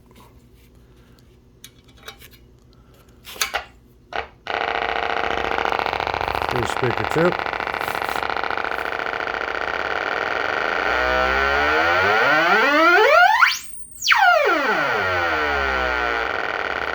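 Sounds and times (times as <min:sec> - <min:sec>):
electronic siren tone sweeping: 0:04.5 - 0:16.9.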